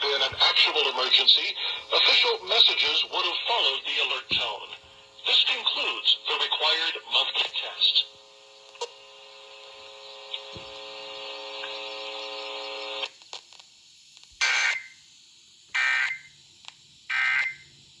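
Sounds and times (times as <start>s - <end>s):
buzzing hum with hiss: 0.0s - 18.0s.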